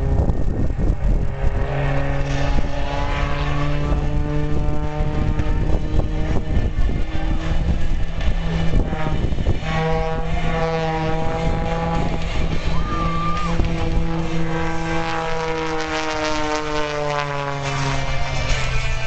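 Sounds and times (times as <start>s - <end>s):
propeller airplane engine droning: 0.0s - 19.0s.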